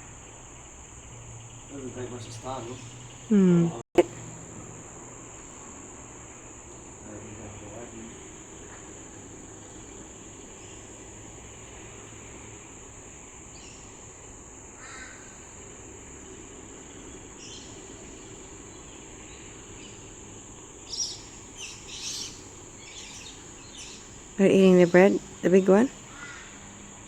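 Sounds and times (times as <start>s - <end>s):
insects trilling: 0.0s - 27.0s
bird cawing: 14.7s - 15.7s, 20.8s - 24.4s, 25.9s - 27.0s.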